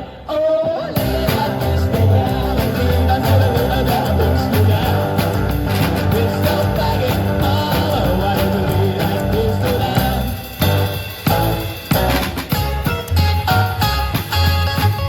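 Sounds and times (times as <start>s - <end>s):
band playing rock and roll: 0.1s - 15.0s
bass line: 1.0s - 15.0s.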